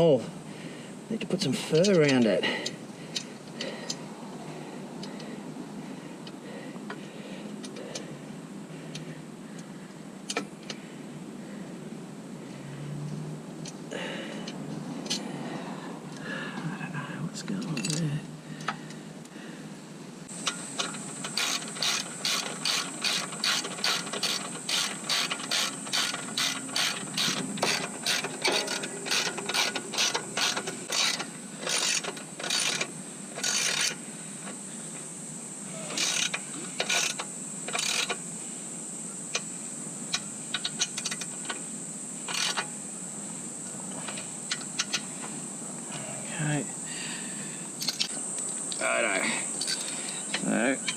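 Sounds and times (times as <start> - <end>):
ratchet wrench clicking: 20.3 - 34.0, 35.9 - 38.2, 40.1 - 41.6, 42.3 - 42.7, 47.8 - 48.1.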